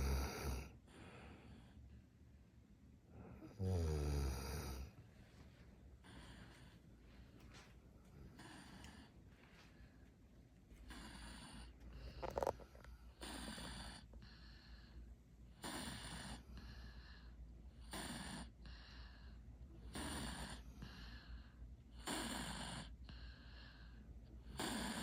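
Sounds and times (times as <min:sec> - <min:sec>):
loud snoring: 0:00.0 - 0:00.8, 0:03.3 - 0:04.9, 0:08.4 - 0:09.1, 0:10.9 - 0:14.7, 0:15.5 - 0:17.2, 0:17.8 - 0:19.2, 0:19.8 - 0:21.2, 0:22.0 - 0:23.6, 0:24.4 - 0:25.0
faint breaths and snores: 0:00.0 - 0:02.4, 0:03.0 - 0:25.0.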